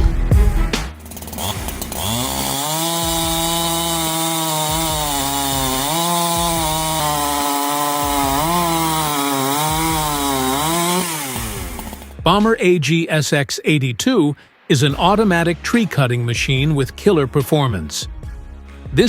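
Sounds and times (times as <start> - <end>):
saw engine running: 0.8 - 12.2.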